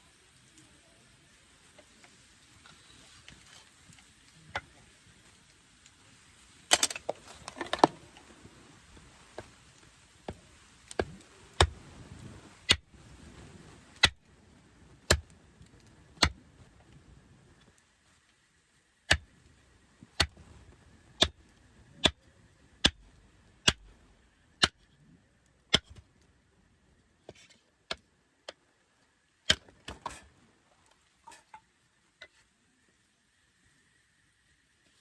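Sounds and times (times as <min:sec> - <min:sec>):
wood splitting knocks: 0:06.7 - 0:08.0.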